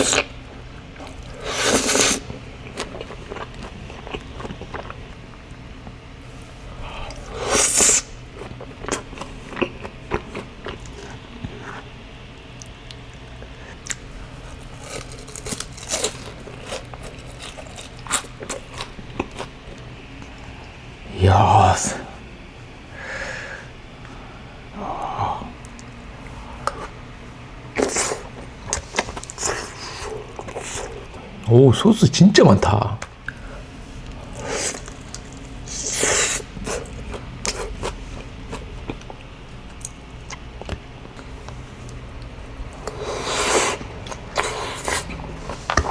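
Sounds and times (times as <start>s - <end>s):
rustling squishy eating sounds: 0.0s - 22.4s, 24.9s - 45.9s
fried chicken crunching: 1.0s - 5.1s, 13.8s - 19.8s.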